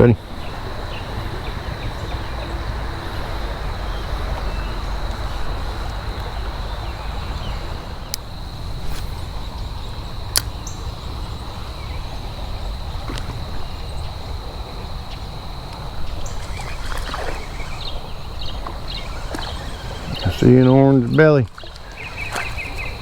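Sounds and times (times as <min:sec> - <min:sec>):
wading in flowing creek: 0:00.0 - 0:23.0
sharp clicks: 0:10.3 - 0:10.6, 0:15.7 - 0:23.0.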